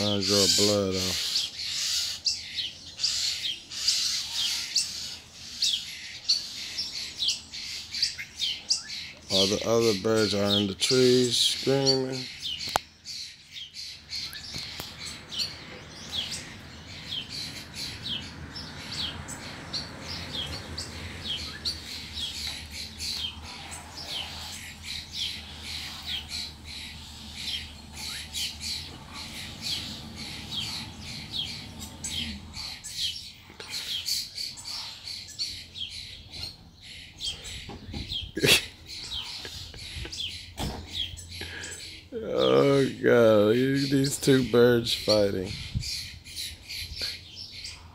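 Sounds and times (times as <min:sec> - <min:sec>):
birds chirping and screaming: 0:00.0 - 0:47.9
low steady rumble: 0:15.1 - 0:33.0.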